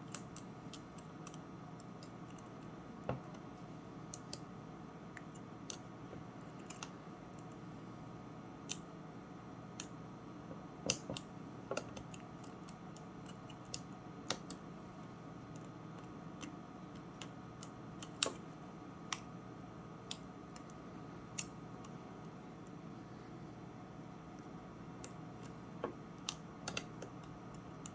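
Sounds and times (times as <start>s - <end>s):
steady low hum: 0.0s - 27.9s.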